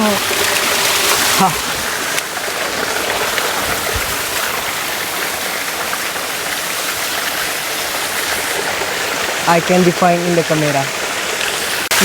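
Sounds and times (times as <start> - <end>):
waterfall rushing over rocks: 0.0 - 12.0.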